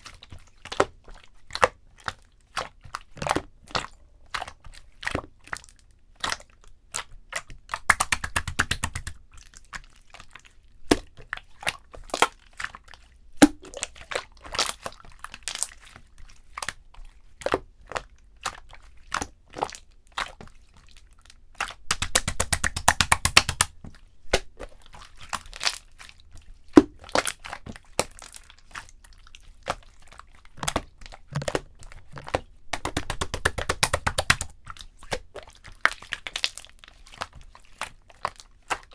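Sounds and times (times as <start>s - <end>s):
slime squishing with clicks and pops: 7.4s - 9.3s, 21.6s - 24.7s, 30.6s - 36.5s.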